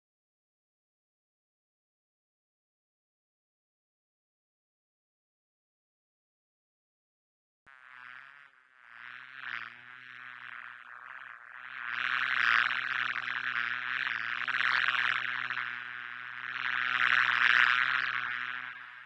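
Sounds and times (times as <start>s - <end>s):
bees buzzing: 7.7s - 19.0s.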